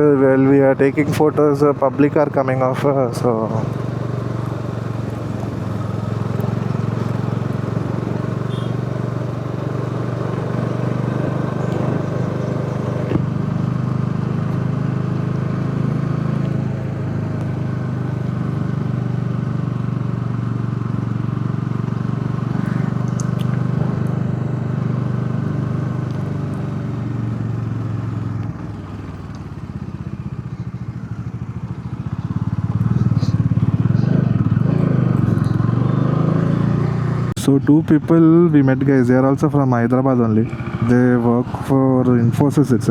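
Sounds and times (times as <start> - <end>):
motorcycle engine running: 0.0 - 42.9.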